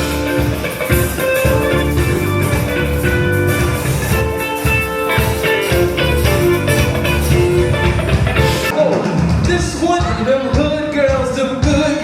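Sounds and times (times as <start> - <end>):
lead guitar: 0.0 - 8.8
live band playing: 0.0 - 12.0.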